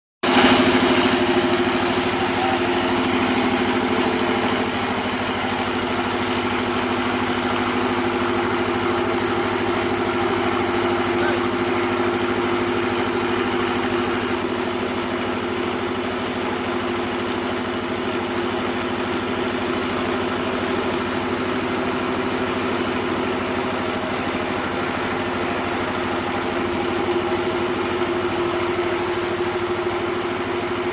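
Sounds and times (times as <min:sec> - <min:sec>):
engine running steadily: 0:00.2 - 0:30.9.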